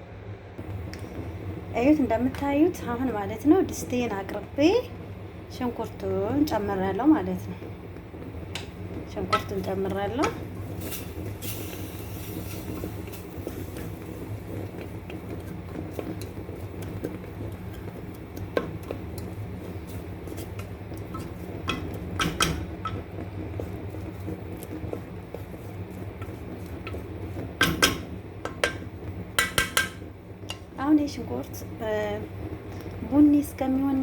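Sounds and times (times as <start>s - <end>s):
steady low hum: 0.0s - 34.0s
spoon scraping cooking pot: 8.6s - 30.8s.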